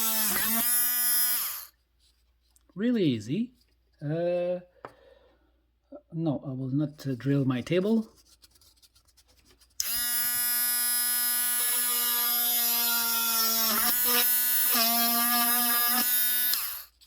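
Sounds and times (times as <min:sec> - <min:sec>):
rotary tool high whine: 0:00.0 - 0:01.7, 0:09.8 - 0:17.0.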